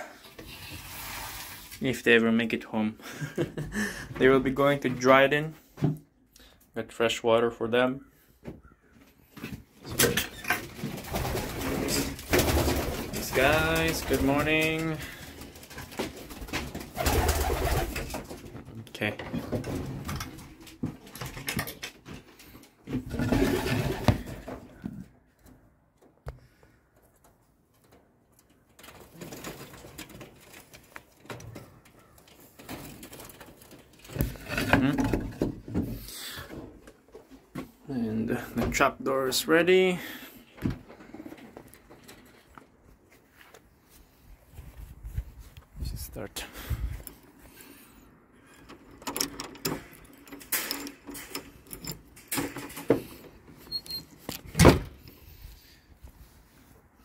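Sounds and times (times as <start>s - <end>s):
knocks and clattering rattles: 9.4s - 25.2s, 27.7s - 37.8s, 48.5s - 53.6s
rustling and clicking: 27.0s - 35.4s.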